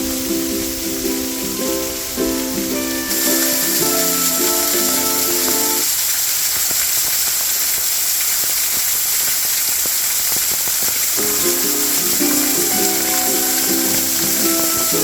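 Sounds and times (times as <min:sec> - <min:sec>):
ukulele music: 0:00.0 - 0:05.9, 0:11.2 - 0:15.0
rain hissing: 0:00.0 - 0:15.0
raindrops ticking: 0:00.0 - 0:15.0.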